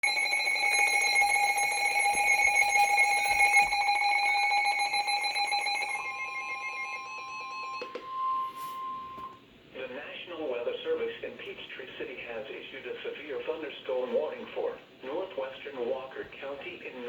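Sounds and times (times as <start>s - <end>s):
pulsing electronic alarm: 0.0s - 9.4s
plain steady tone: 0.0s - 12.2s.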